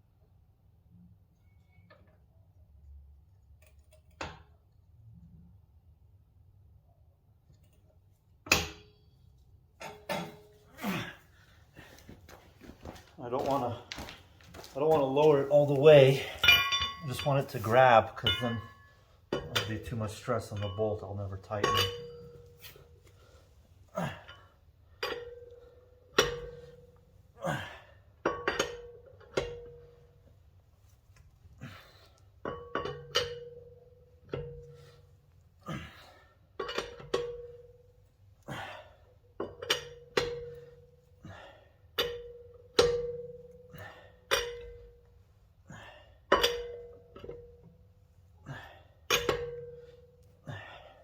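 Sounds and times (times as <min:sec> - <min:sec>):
metal wrench clanks: 0:16.2 - 0:17.6, 0:18.2 - 0:22.5, 0:46.3 - 0:47.5, 0:49.1 - 0:49.9.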